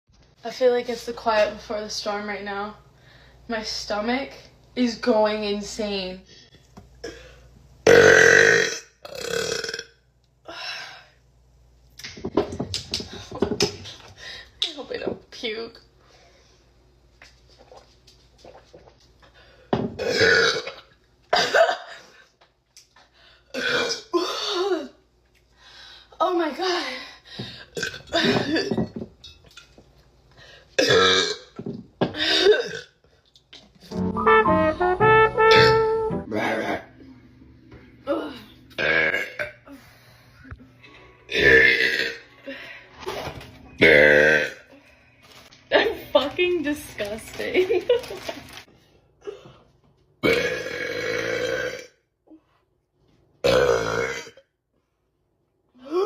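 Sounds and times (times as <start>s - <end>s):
woman burping: 7.9s - 9.9s, 20.0s - 22.0s, 23.5s - 25.0s, 30.8s - 31.5s, 32.2s - 32.9s, 38.8s - 39.7s, 41.3s - 42.3s, 43.8s - 44.7s, 50.2s - 51.9s, 53.4s - 54.4s
brass music: 33.9s - 36.9s.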